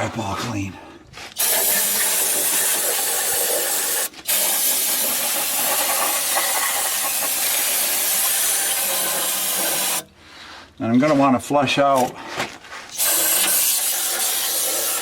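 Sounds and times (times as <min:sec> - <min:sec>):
aerosol spray hissing: 0:01.4 - 0:10.0.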